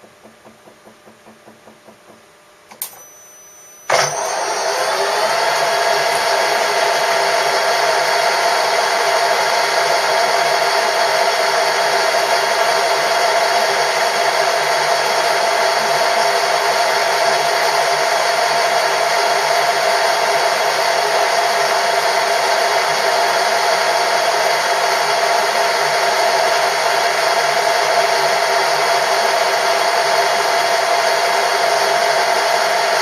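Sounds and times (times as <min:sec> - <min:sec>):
machine tool whirring: 0:01.2 - 0:08.0.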